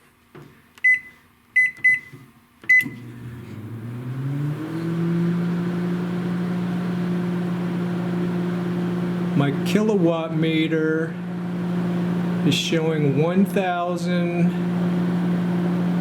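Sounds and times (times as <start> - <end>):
microwave keypad beeps: 0.8 - 3.0
microwave running hum: 0.8 - 16.0.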